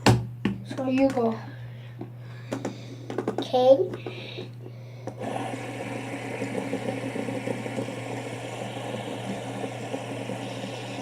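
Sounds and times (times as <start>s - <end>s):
fidget spinners whirring: 5.1s - 11.0s.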